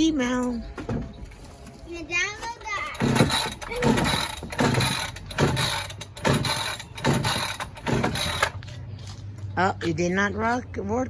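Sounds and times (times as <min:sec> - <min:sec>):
engine turning over: 0:02.8 - 0:08.6
chainsaw recoil starter pulls: 0:03.0 - 0:08.6.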